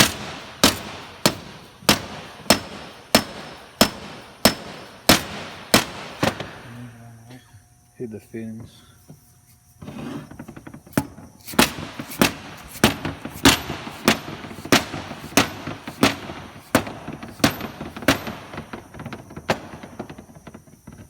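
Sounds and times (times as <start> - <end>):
hammer striking: 0.0 - 6.6, 11.5 - 18.8.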